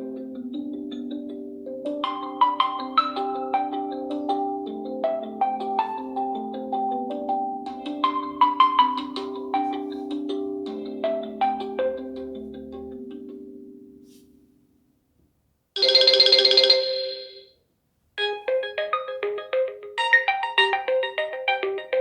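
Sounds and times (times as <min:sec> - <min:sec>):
repeating ringtone melody: 0:00.1 - 0:12.2, 0:15.8 - 0:17.5, 0:18.2 - 0:22.0
phone ringtone: 0:00.9 - 0:12.2, 0:15.8 - 0:17.5, 0:18.2 - 0:22.0.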